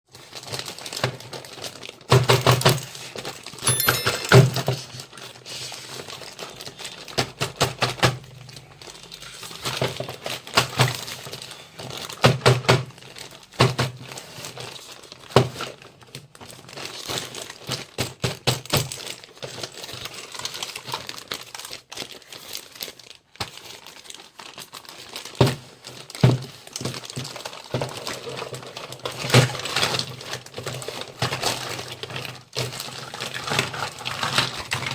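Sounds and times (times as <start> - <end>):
packaging crinkling: 0.2 - 2.0, 18.6 - 34.9
toy pieces clicking and clattering: 3.7 - 4.7.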